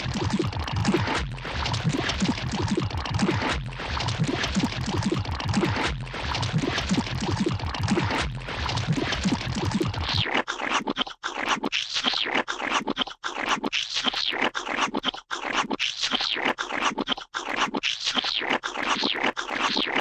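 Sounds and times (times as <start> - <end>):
gooey wet squelching: 0.0 - 20.0.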